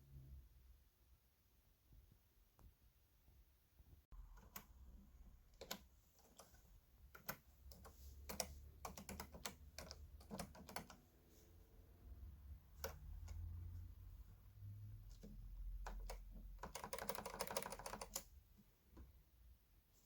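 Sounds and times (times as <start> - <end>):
typewriter keys clicking: 15.9 - 18.2.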